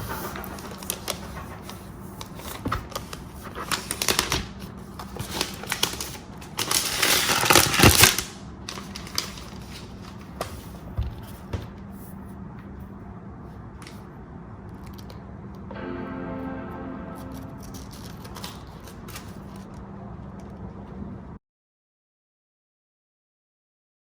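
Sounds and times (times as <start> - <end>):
packaging rustling and crinkling: 0.1 - 11.4.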